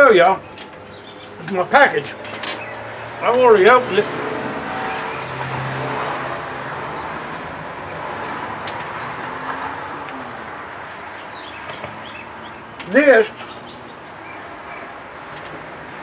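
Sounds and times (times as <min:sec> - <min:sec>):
road traffic rushing by: 0:00.0 - 0:16.0.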